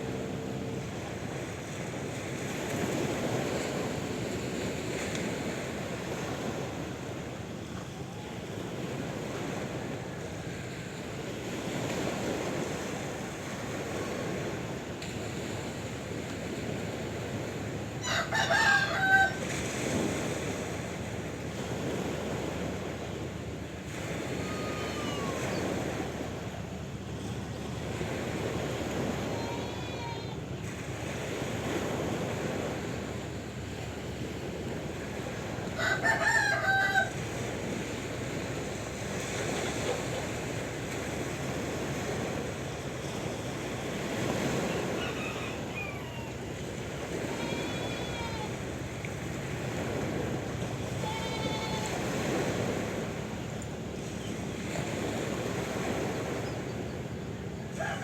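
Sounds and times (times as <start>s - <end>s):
sea waves washing on shore: 0.0s - 58.0s
animal call: 24.4s - 25.7s, 44.6s - 46.6s.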